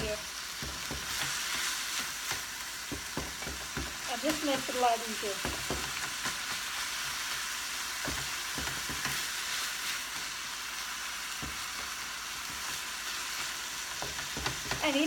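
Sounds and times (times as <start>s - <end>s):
meat sizzling in a frying pan: 0.0s - 15.0s.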